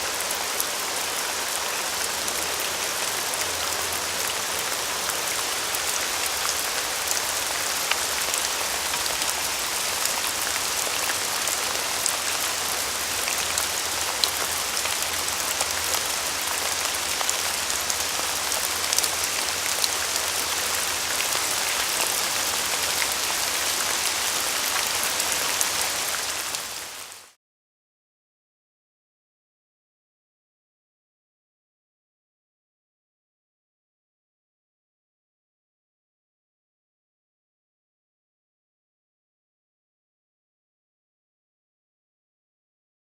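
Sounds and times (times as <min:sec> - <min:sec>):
steady rain falling: 0:00.0 - 0:27.4.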